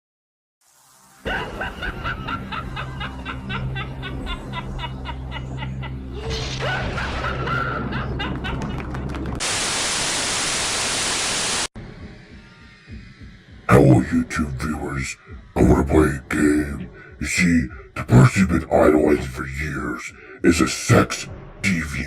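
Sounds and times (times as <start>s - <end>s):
snickering laugh: 1.3s - 9.0s
droning music with pulsing notes: 1.3s - 9.4s, 11.8s - 18.0s
loud static: 9.4s - 11.7s.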